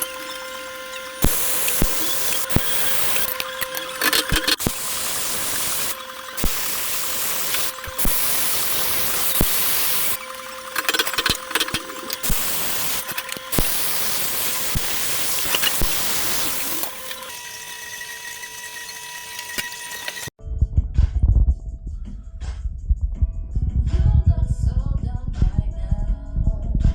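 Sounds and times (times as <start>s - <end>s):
clicks: 0.0s - 20.3s
steady hum: 0.0s - 20.3s
welding arc hissing: 0.0s - 20.3s.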